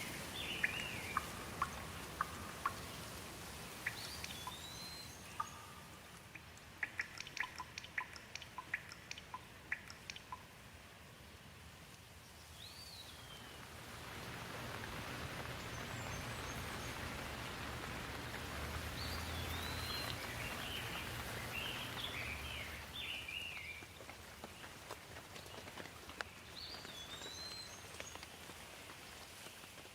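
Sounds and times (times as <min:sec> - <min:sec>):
bird chirping: 0:00.0 - 0:03.2, 0:03.8 - 0:10.4, 0:15.2 - 0:23.9
rain hiss: 0:00.0 - 0:29.9.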